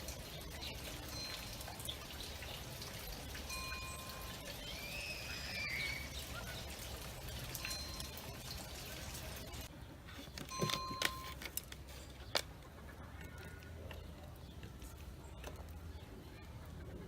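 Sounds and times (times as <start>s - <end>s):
bird call gliding in pitch: 4.5s - 6.5s.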